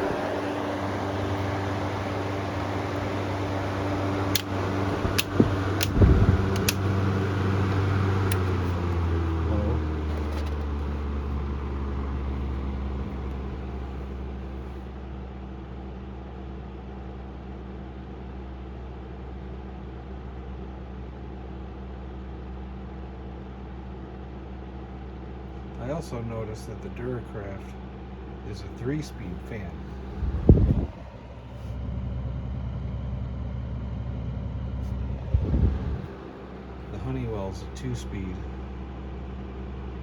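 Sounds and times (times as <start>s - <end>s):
table fan humming: 0.0s - 14.9s, 28.2s - 31.9s, 33.8s - 40.0s
sharp clicks: 4.3s - 6.9s.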